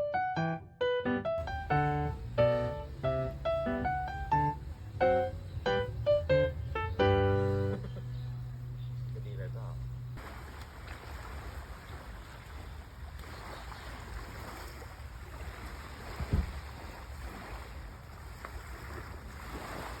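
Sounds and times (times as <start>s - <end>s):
sea waves washing on shore: 1.4s - 7.8s, 10.2s - 20.0s
wind rumbling on microphone: 14.0s - 20.0s
low thump: 16.2s - 16.6s.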